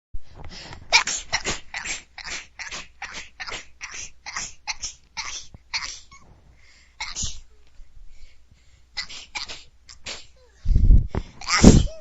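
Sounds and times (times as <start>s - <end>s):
person sneezing squeakily: 0.9s - 6.3s, 7.0s - 7.6s, 9.0s - 10.6s, 11.4s - 12.0s.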